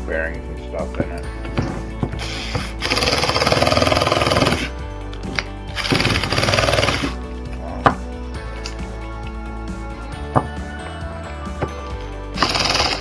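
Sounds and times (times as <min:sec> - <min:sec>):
background music: 0:00.0 - 0:13.0
power tool buzzing rattle: 0:01.2 - 0:08.2, 0:12.4 - 0:13.0.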